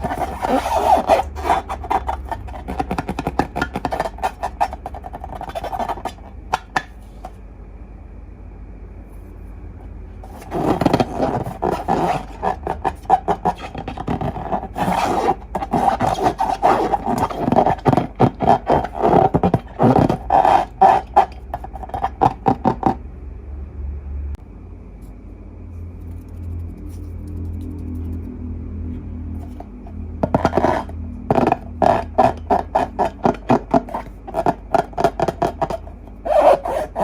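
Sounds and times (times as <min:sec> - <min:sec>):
slime squishing: 0:00.0 - 0:07.3, 0:10.2 - 0:23.0, 0:29.4 - 0:37.0
low steady hum: 0:00.0 - 0:37.0.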